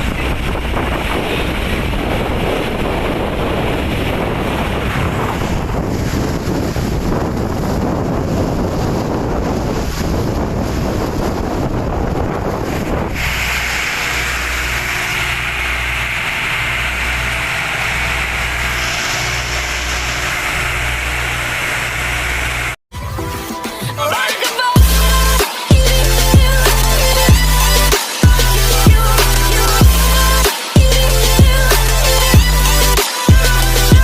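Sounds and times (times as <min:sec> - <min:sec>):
marine engine droning: 0:00.0 - 0:22.8, 0:24.8 - 0:34.0
wind buffeting microphone: 0:00.0 - 0:22.8.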